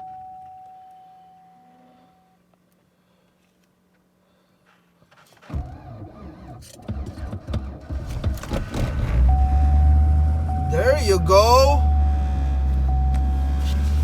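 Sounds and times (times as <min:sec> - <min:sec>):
truck engine cranking and starting: 0:05.1 - 0:10.7.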